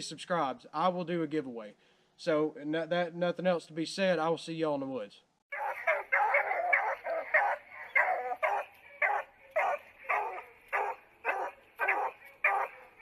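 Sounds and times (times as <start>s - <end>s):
dog barking: 5.6s - 13.0s.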